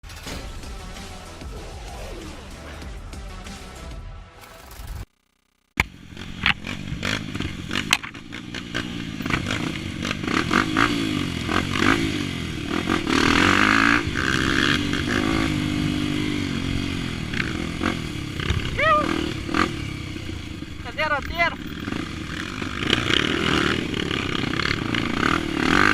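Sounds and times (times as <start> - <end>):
knocks and clatter: 0.0 - 1.2
motorbike engine revving: 0.0 - 25.9.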